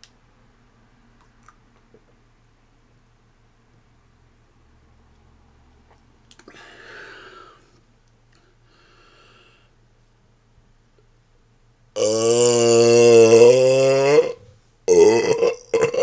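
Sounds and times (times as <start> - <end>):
man breathing in: 6.5 - 7.8, 8.4 - 9.8.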